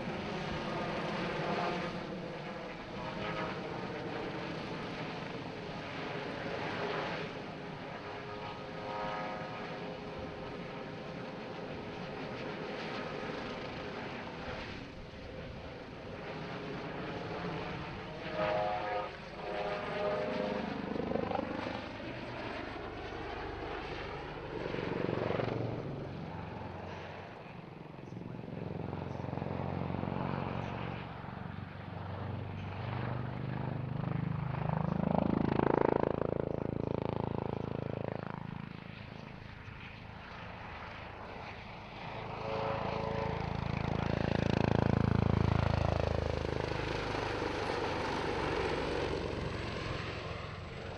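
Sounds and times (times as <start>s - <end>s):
helicopter rotor and turbine: 0.0s - 50.9s.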